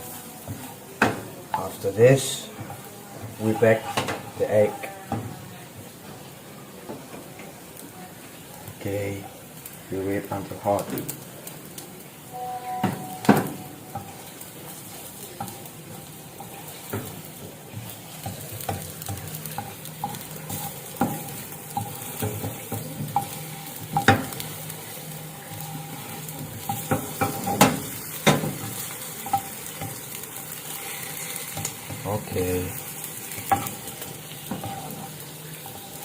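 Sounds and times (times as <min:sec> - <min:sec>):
egg sizzling in a pan: 0:00.0 - 0:36.0
utensil scraping a pan: 0:01.6 - 0:05.0.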